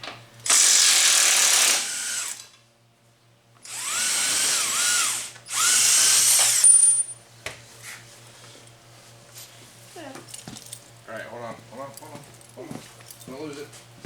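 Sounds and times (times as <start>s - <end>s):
electric drill-driver running: 0.4s - 2.5s, 3.6s - 6.8s.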